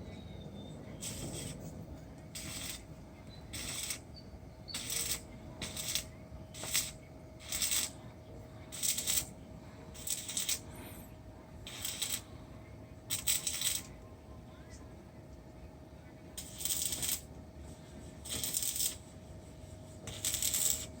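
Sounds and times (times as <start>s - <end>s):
faint steady hum: 0.0s - 21.0s
arc welding crackling: 1.0s - 8.0s, 8.7s - 10.8s, 11.6s - 12.3s, 13.1s - 14.0s, 16.4s - 17.4s, 18.2s - 21.0s.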